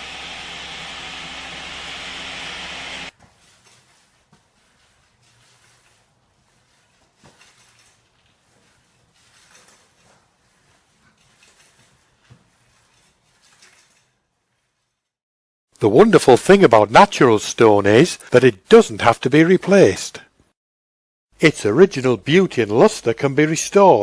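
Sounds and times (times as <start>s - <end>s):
floor-cleaning machine hissing: 0.0s - 3.1s
faint clinks and knocks: 7.1s - 10.4s, 11.0s - 15.1s.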